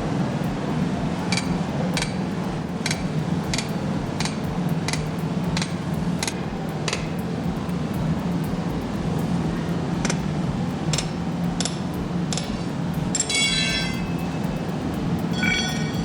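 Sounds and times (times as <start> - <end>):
steady low hum: 0.0 - 16.0
hammer striking metal: 13.2 - 14.2, 15.3 - 16.0.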